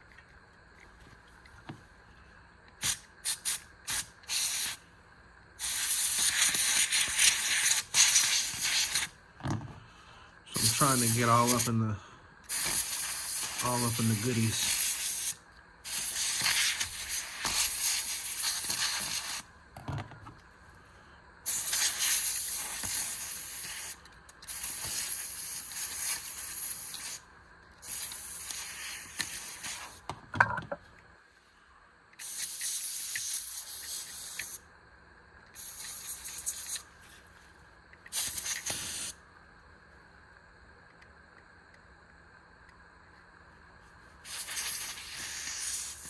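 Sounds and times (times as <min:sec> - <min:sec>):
compressed air duster hissing: 0:02.8 - 0:04.9, 0:05.6 - 0:09.2, 0:09.9 - 0:19.6, 0:21.4 - 0:30.1, 0:32.2 - 0:34.6, 0:35.6 - 0:37.3, 0:38.1 - 0:39.2, 0:44.2 - 0:46.0.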